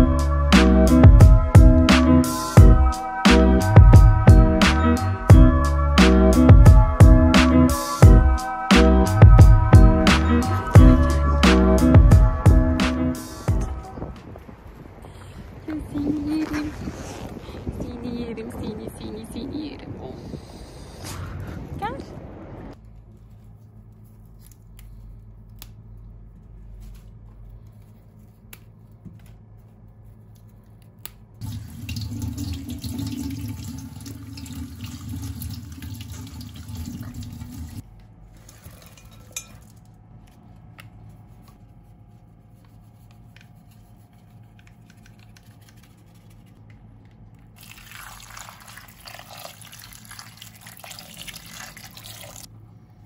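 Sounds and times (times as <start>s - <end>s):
tap water running into sink: 31.4s - 37.8s, 47.6s - 52.4s.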